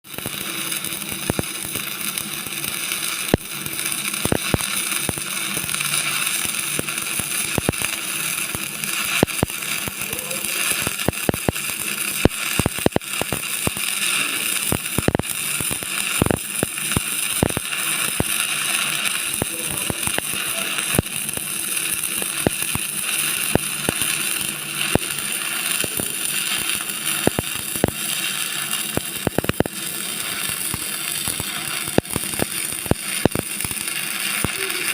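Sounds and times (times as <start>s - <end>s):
electric arc welding crackling hiss: 0.0s - 34.9s
welding pops and spatter: 0.0s - 34.9s.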